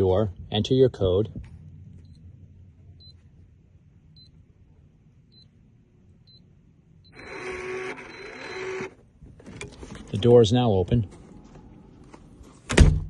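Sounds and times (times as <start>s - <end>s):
keypad lock beeping: 7.1s - 8.8s
lock motor running: 7.2s - 9.0s.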